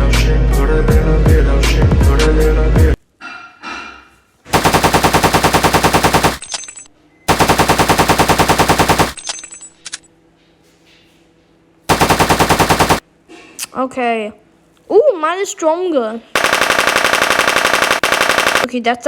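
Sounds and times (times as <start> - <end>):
synthetic machine-gun fire: 4.5 - 6.5, 7.3 - 9.2, 11.9 - 13.0, 16.4 - 18.8.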